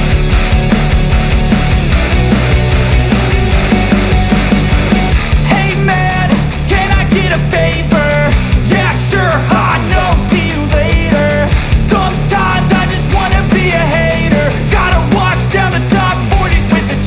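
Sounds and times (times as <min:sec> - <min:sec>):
loud drums: 0:00.0 - 0:17.0
rock music: 0:00.0 - 0:17.0
steady bass: 0:00.0 - 0:17.0
person singing: 0:05.4 - 0:17.0.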